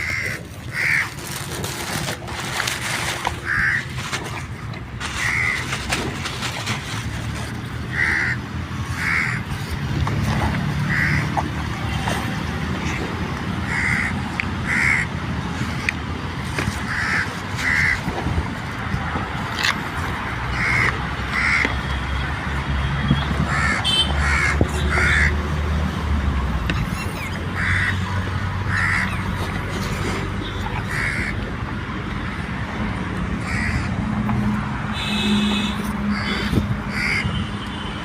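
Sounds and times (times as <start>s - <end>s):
crows cawing: 0.0s - 1.2s, 3.4s - 3.9s, 5.2s - 5.7s, 7.9s - 9.4s, 10.8s - 11.4s, 13.7s - 15.1s, 16.9s - 18.0s, 20.5s - 21.7s, 23.5s - 25.4s, 27.6s - 28.0s, 28.6s - 29.3s, 30.8s - 31.4s, 33.4s - 34.0s, 36.1s - 37.3s.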